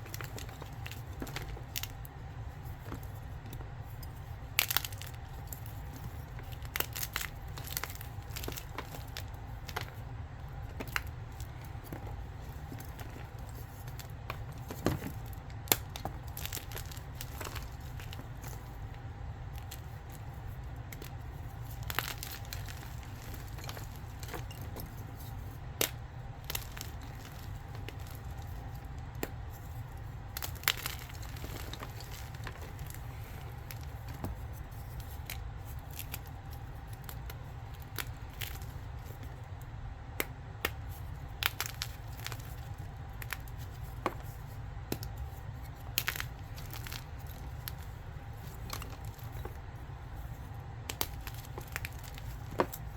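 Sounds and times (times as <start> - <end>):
steady low hum: 0.0 - 52.9
chalk crunching: 19.5 - 39.2.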